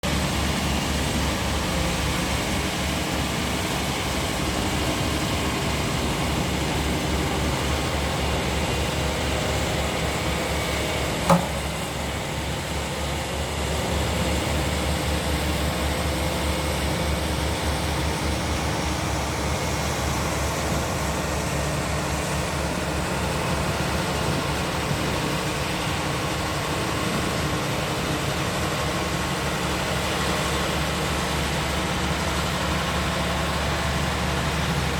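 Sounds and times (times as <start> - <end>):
diesel engine running: 0.0 - 34.9
sharp click: 11.3 - 11.6.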